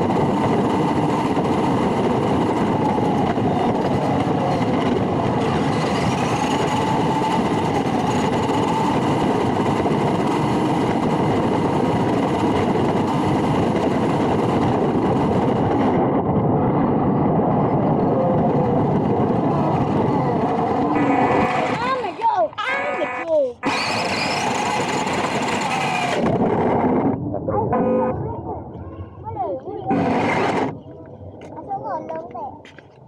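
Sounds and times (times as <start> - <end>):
toy truck electric motor whirring: 23.0 - 26.4.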